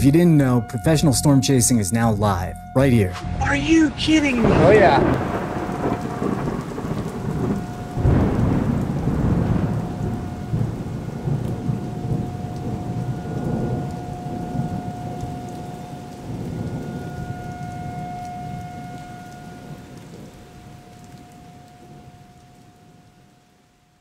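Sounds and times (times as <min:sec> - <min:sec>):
steady rain: 0:00.0 - 0:24.0
rolling thunder: 0:03.0 - 0:22.4.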